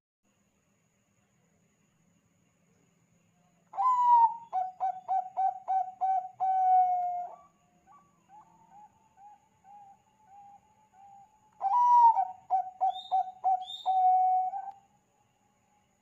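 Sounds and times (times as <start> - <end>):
dove cooing: 3.8 - 14.7.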